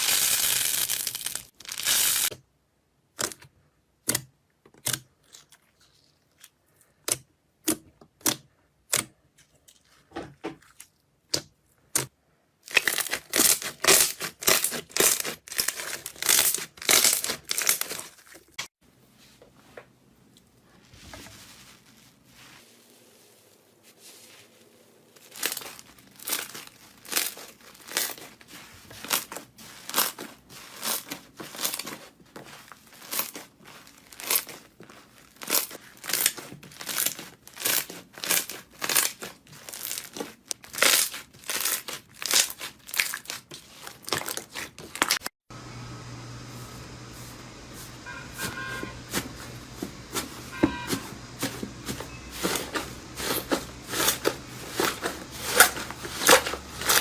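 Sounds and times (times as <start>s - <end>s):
slime crackling and popping: 0.0s - 2.3s, 12.6s - 18.1s, 25.2s - 32.1s, 32.8s - 45.3s.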